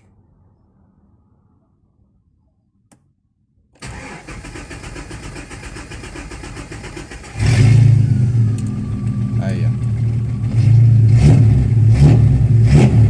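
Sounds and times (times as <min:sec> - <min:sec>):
starter motor cranking: 0:03.8 - 0:07.5
engine catching: 0:03.8 - 0:13.0.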